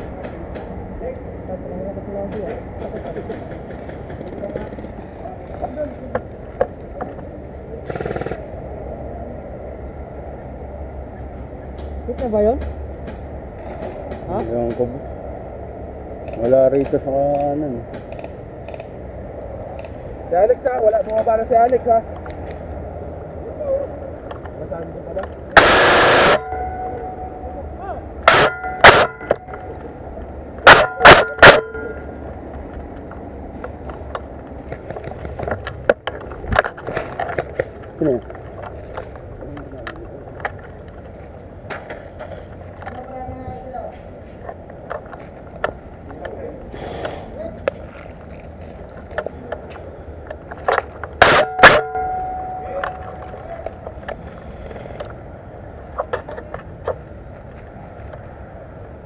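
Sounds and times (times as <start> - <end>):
airsoft gun shots: 25.6 - 26.9, 28.2 - 29.6, 30.6 - 32.0, 51.2 - 52.2
metallic ringing: 26.2 - 29.7, 30.7 - 32.2, 51.2 - 53.6.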